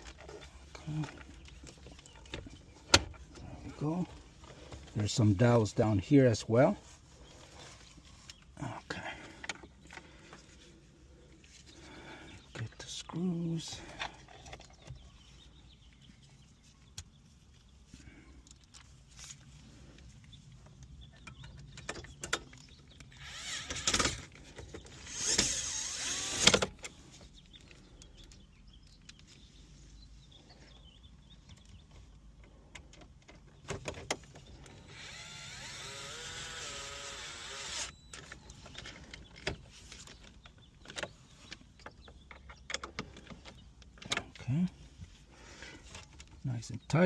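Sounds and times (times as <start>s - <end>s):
handling clicks and knocks: 20.1s - 23.1s, 38.0s - 44.8s
cordless drill driving screws: 23.1s - 24.3s, 25.0s - 26.7s, 34.7s - 38.0s.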